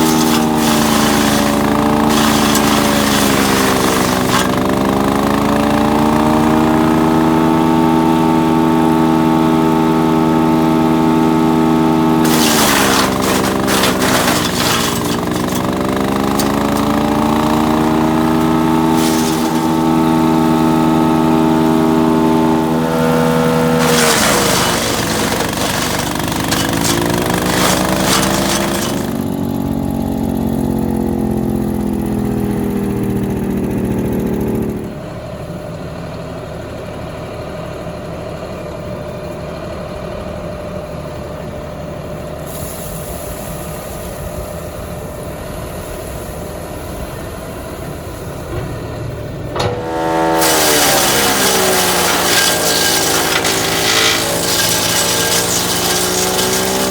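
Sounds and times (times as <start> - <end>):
wood crackling in chipper: 0.0 - 6.4, 12.2 - 22.2, 23.6 - 29.9, 49.5 - 56.9
wood chipper engine running: 0.0 - 42.2, 48.3 - 56.9.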